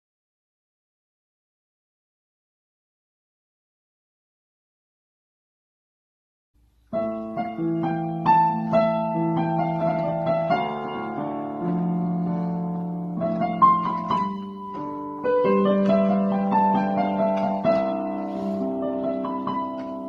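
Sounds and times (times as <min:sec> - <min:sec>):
piano music: 0:06.8 - 0:20.0.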